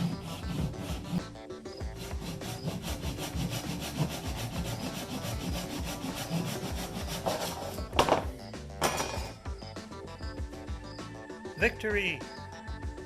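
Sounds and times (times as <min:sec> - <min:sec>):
hand saw cutting wood: 0:00.0 - 0:01.3, 0:01.9 - 0:07.9.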